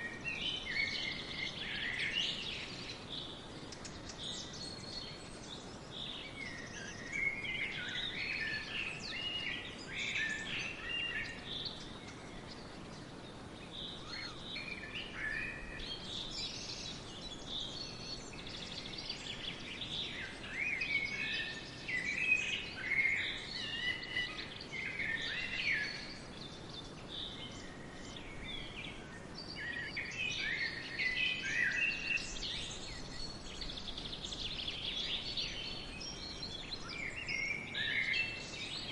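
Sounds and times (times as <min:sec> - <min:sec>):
songbirds singing and chirping: 0:00.0 - 0:38.9
steady background hiss: 0:00.0 - 0:38.9.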